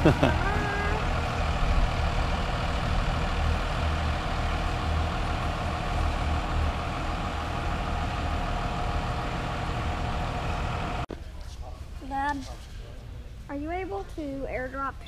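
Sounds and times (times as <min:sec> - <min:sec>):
engine running: 0:00.0 - 0:11.1.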